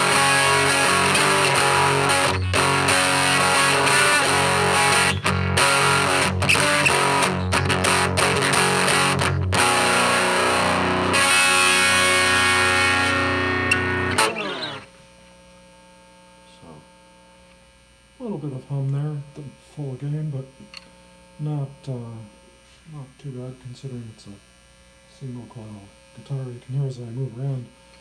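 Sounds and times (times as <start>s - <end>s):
distorted electric guitar chords: 0.0s - 14.9s.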